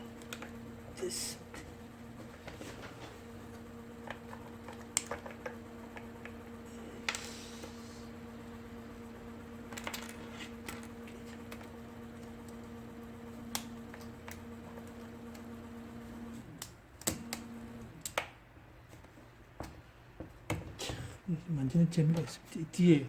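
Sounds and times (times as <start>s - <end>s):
typewriter motor humming: 0.0s - 18.1s.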